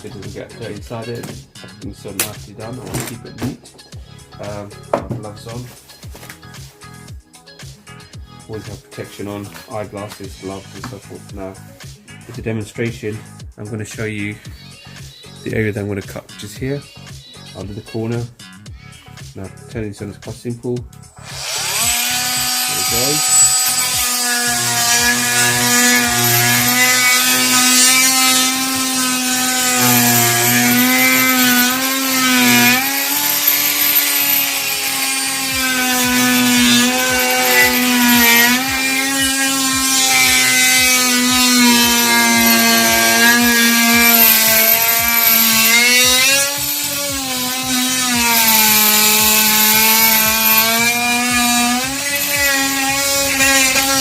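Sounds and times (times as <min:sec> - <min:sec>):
oscillating multi-tool cutting: 0:21.2 - 0:54.0.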